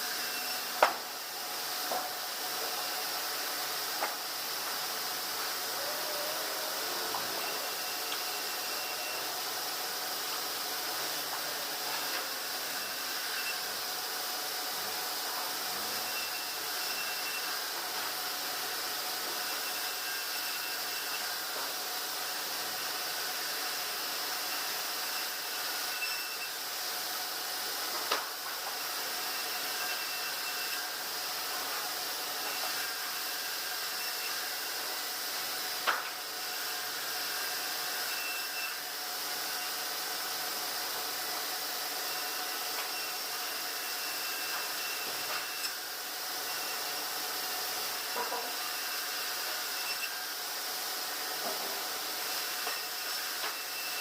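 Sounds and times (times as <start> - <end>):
machine whine: 0.0 - 26.8
sawmill machinery whirring: 0.0 - 54.0.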